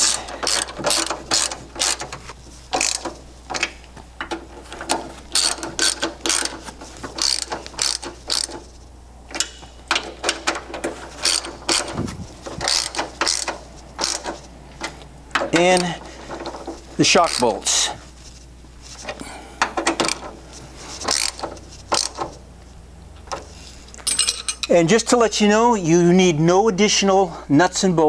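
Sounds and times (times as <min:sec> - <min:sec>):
ratchet wrench clicking: 0:00.0 - 0:08.7, 0:09.3 - 0:15.9, 0:16.5 - 0:17.6, 0:21.0 - 0:22.4.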